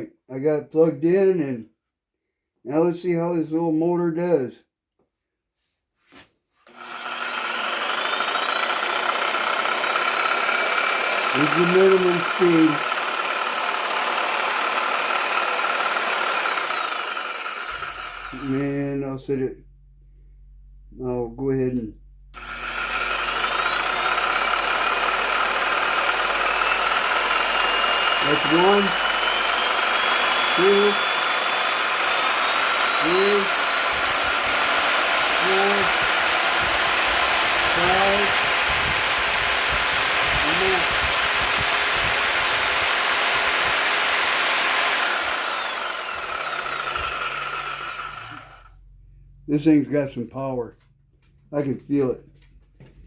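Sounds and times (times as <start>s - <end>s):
reciprocating saw motor whine: 6.7s - 19.8s, 22.1s - 48.8s.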